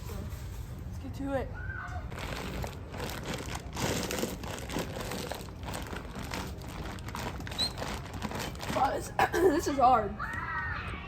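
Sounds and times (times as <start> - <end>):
dog food bags crinkling: 2.1 - 9.2.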